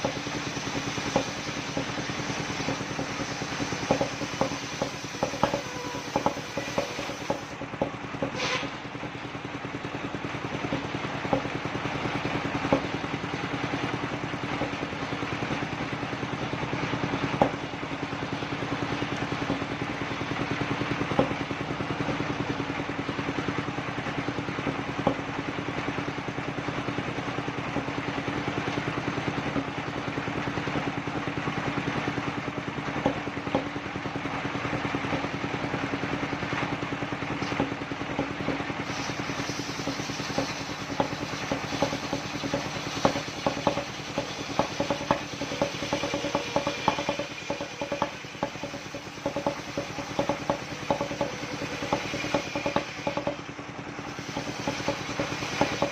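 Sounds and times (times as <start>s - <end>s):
sawmill engine running: 0.0s - 55.9s
sharp clattering knocks: 1.0s - 8.4s, 39.8s - 53.5s, 54.3s - 55.9s.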